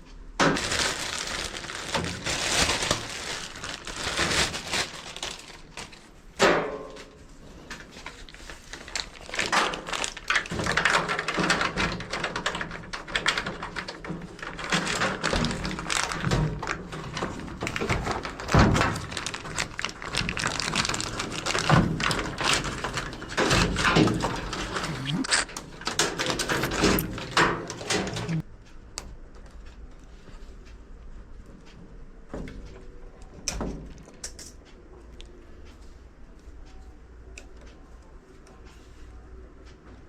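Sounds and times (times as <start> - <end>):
hands tapping and rustling parts: 0.4 - 24.9.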